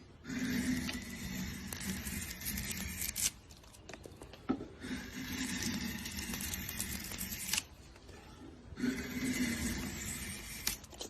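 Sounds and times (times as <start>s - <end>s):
tool cutting wood: 0.0s - 3.4s, 4.8s - 7.7s, 8.8s - 11.0s.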